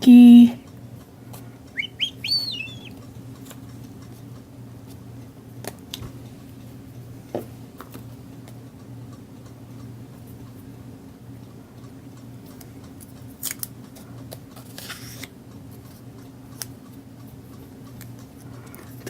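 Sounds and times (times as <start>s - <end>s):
steady low hum: 0.0s - 5.5s
bird chirp: 1.8s - 2.9s.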